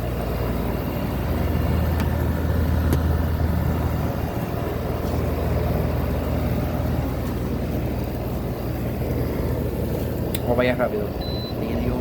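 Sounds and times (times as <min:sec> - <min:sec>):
motor running rumble: 0:00.0 - 0:12.0.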